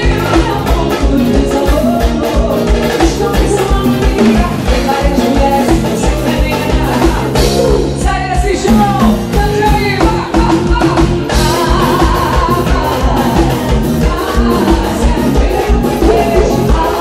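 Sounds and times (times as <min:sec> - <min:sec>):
band music: 0:00.0 - 0:17.0
person singing: 0:00.0 - 0:17.0.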